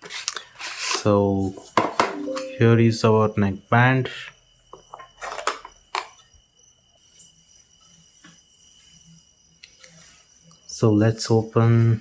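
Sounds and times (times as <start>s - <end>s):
faint high-pitched tone: 2.0s - 3.3s.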